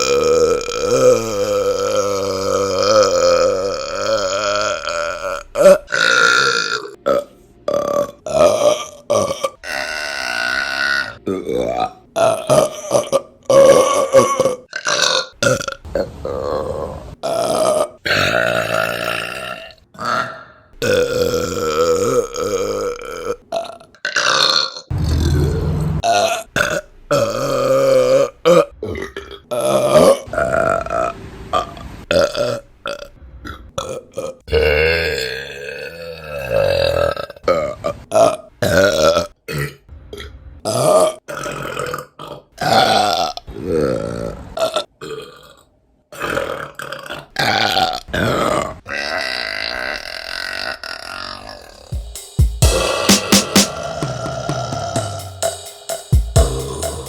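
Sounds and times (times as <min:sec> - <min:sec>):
women burping loudly: 0:00.0 - 0:15.8.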